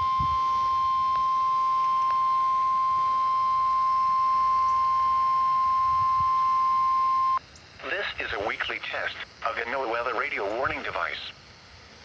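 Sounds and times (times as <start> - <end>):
steady alarm tone beep: 0.0 - 7.4.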